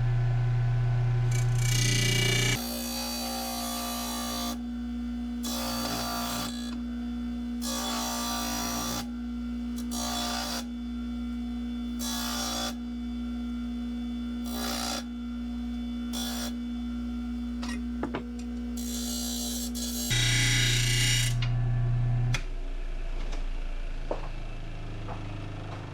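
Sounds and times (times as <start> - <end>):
bench sander motor hum: 0.0 - 22.4.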